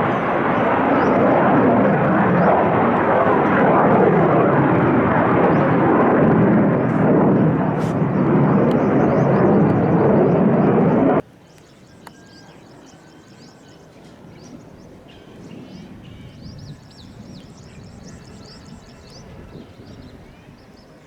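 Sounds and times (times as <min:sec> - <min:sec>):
small birds chirping: 0:00.0 - 0:02.8, 0:06.8 - 0:21.0
jet engine rushing: 0:00.0 - 0:11.2.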